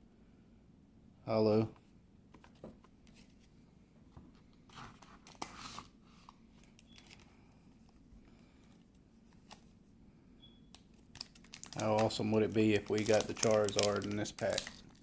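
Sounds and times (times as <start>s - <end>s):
cards clicking and rustling: 10.8s - 15.0s
foil wrapper crinkling and tearing: 10.8s - 15.0s.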